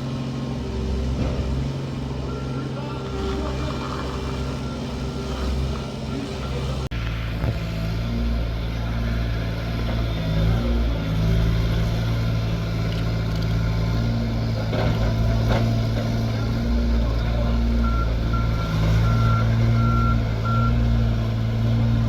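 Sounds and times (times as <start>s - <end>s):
heavy machine engine running: 0.0s - 22.0s
back-up alarm beeps: 2.2s - 3.4s, 4.2s - 6.9s, 17.8s - 20.9s.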